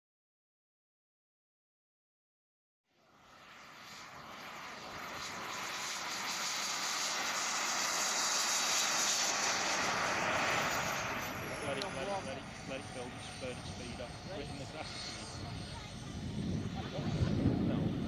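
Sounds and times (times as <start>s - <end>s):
model jet turbine rush: 3.0s - 18.0s.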